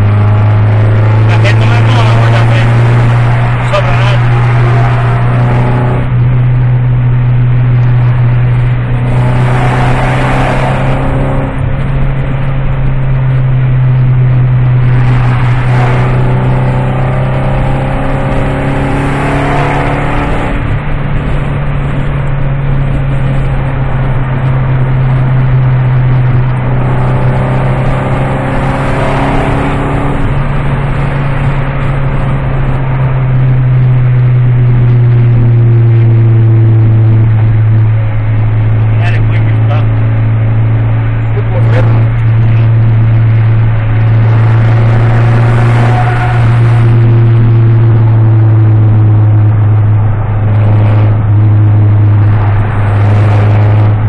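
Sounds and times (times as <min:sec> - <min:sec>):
car exhaust rumbling: 0:00.0 - 0:54.0.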